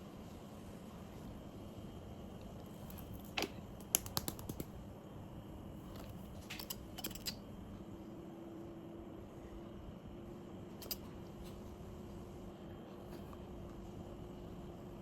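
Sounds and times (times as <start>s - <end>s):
steady low hum: 0.0s - 15.0s
light sharp clicks and taps: 2.4s - 4.8s.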